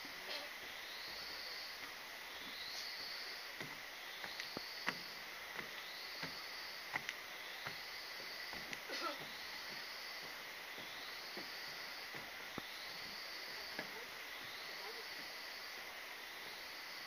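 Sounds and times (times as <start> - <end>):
footsteps on trail: 1.8 - 15.4.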